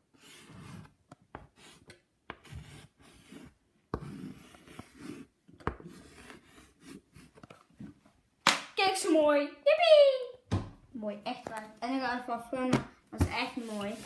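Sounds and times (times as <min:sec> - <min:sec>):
marker scratching on board: 0:00.0 - 0:07.6, 0:13.2 - 0:14.0.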